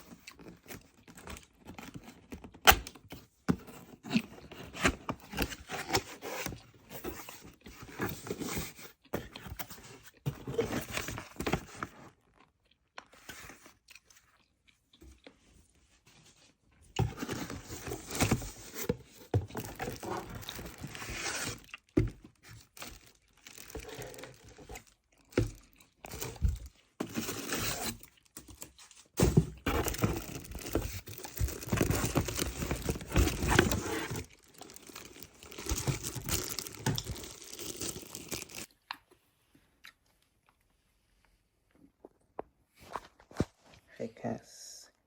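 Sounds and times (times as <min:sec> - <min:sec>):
packaging torn and crumpled: 0:22.6 - 0:24.9, 0:29.8 - 0:38.7.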